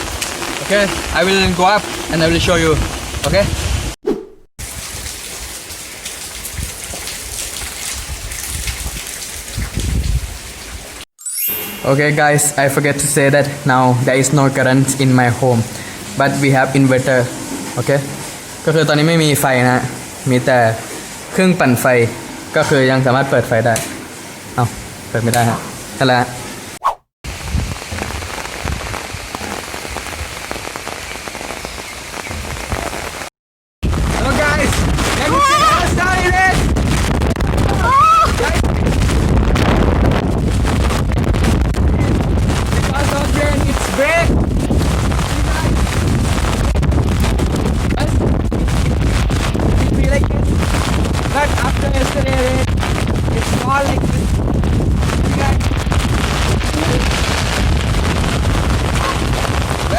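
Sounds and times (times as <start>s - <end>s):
heavy rain pouring: 0.0s - 4.0s, 4.6s - 11.1s, 11.8s - 59.9s
wind buffeting microphone: 0.0s - 4.0s, 4.6s - 11.0s, 27.3s - 31.0s, 33.8s - 59.9s.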